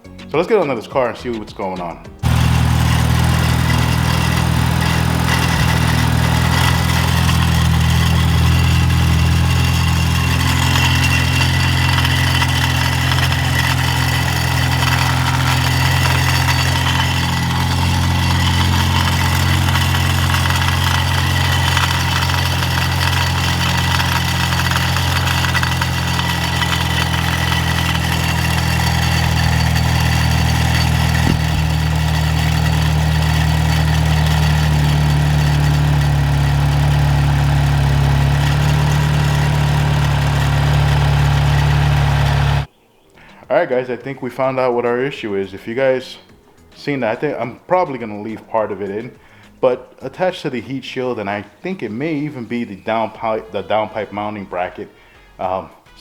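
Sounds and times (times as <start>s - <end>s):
car engine idling: 2.2s - 42.7s
metal rattle: 2.2s - 42.7s.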